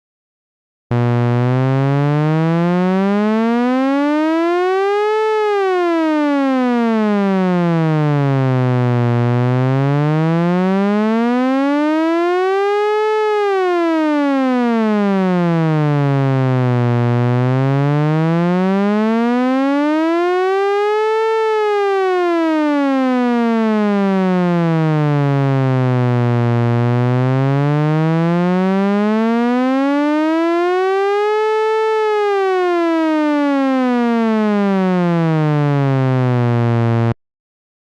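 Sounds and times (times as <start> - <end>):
electronic tone rising and falling: 0.9 - 3.1, 35.9 - 37.2.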